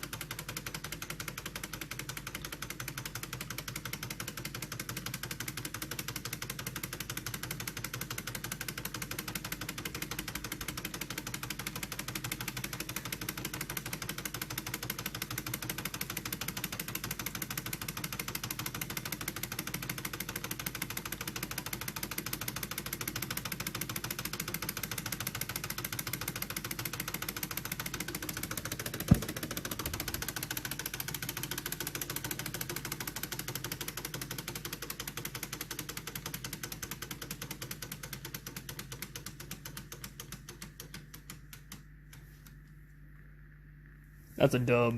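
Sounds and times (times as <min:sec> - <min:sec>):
engine mechanical clatter: 0:00.0 - 0:39.2
sharp knock: 0:29.0 - 0:30.2.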